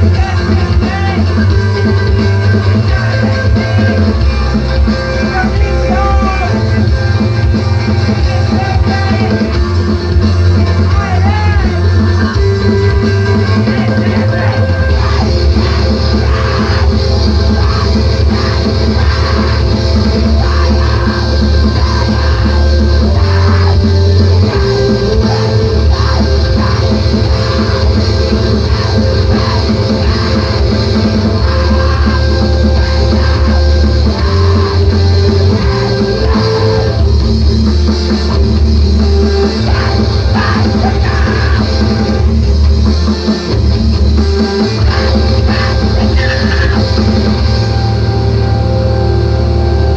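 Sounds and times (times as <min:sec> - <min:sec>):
loud hardcore band music: 0:00.0 - 0:49.9.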